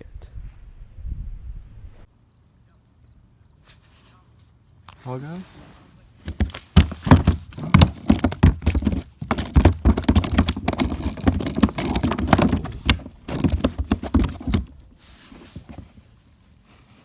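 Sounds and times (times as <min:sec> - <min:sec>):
fish knocks and splashes: 0:06.3 - 0:14.8.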